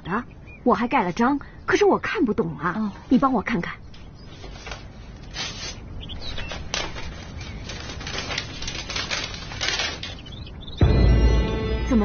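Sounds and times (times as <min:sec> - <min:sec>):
paper rustling and crinkling: 0:04.3 - 0:10.5.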